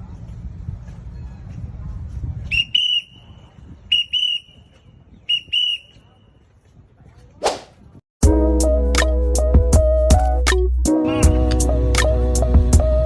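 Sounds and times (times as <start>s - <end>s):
shrill whistle blasts: 2.5s - 6.1s.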